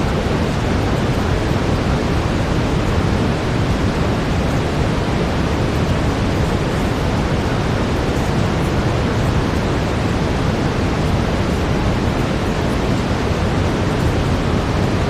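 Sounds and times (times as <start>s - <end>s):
deep rushing brown noise: 0.0s - 15.0s.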